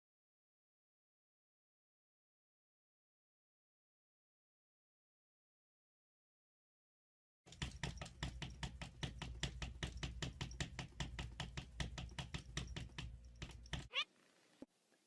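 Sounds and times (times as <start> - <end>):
rapid tapping: 7.5 - 13.9.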